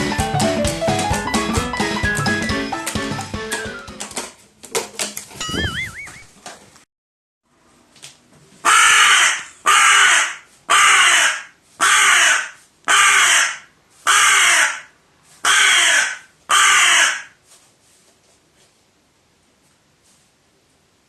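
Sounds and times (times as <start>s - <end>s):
crow cawing harshly: 8.6s - 17.4s.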